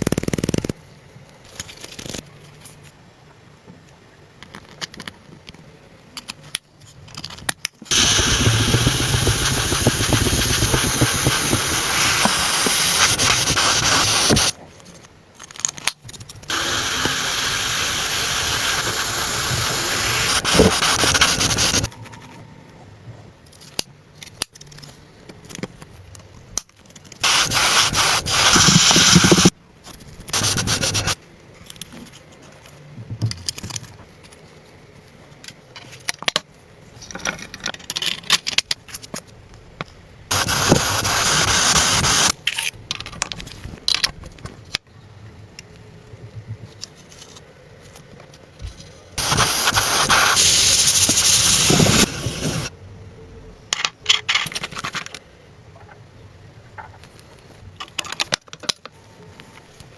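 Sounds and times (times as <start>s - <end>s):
loud hissing bursts: 7.9s - 14.6s, 16.5s - 21.9s, 27.2s - 29.5s, 30.3s - 31.2s, 40.3s - 42.4s, 49.2s - 52.7s.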